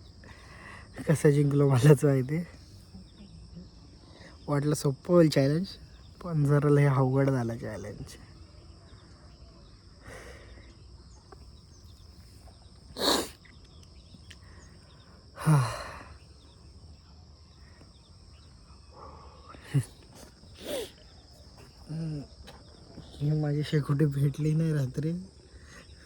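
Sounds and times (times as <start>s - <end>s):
crickets chirring: 0.0s - 26.0s
man sighing breathily: 15.4s - 16.2s.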